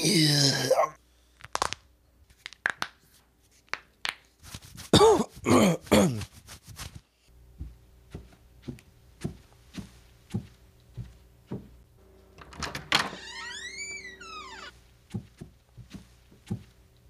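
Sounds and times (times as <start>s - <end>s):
soft thuds: 7.6s - 11.9s, 15.1s - 16.8s.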